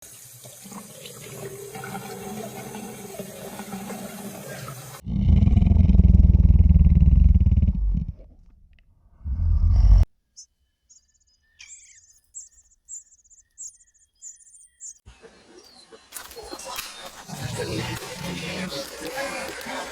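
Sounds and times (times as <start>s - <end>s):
deep animal growl: 5.0s - 8.5s, 9.1s - 10.0s
soft high chirps: 10.3s - 17.0s.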